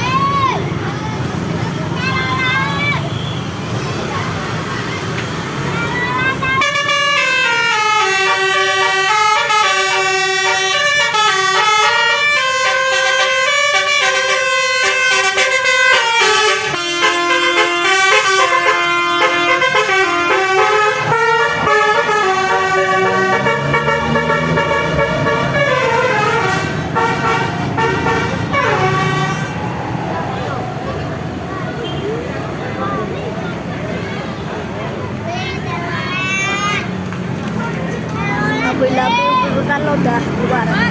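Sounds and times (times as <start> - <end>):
bus musical horn playing tune: 6.5 - 29.8.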